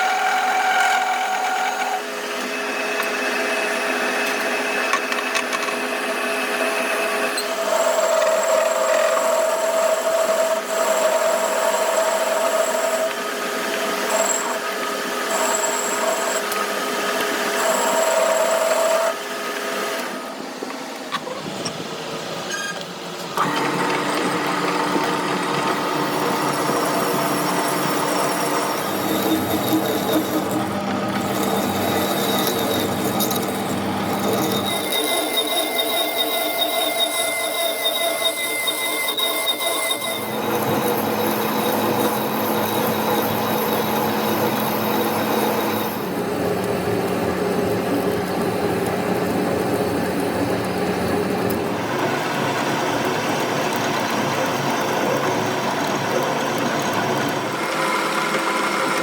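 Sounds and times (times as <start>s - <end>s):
high squeal: 6.8s - 9.4s, 15.3s - 16.6s, 26.6s - 46.1s
metal-working machinery humming: 20.0s - 59.0s.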